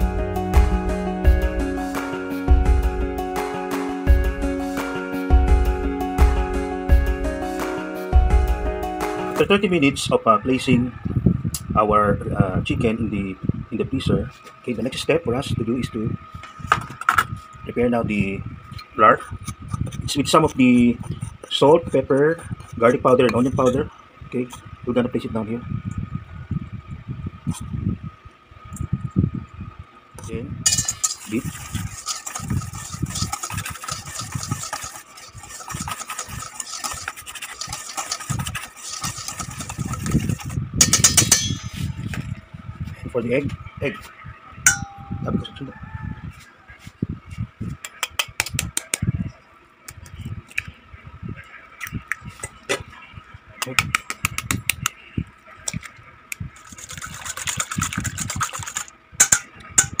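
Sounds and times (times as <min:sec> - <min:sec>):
eggs beaten in a bowl: 0:30.7 - 0:41.6, 0:56.6 - 1:00.0.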